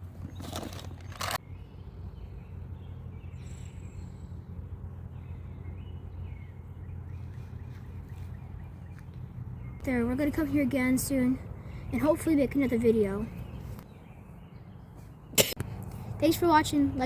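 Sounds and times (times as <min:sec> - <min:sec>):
faint bird chirps: 0:01.4 - 0:09.8.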